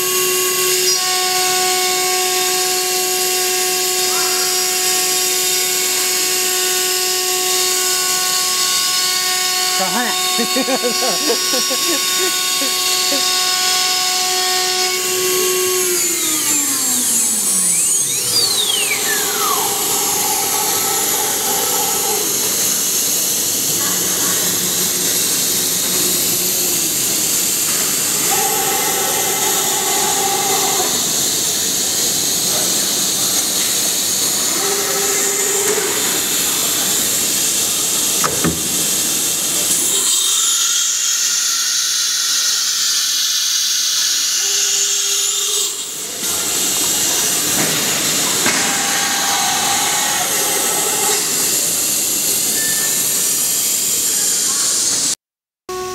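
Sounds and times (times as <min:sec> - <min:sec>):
router spindle whine: 0:00.0 - 0:55.9
short motor runs: 0:00.7 - 0:39.9.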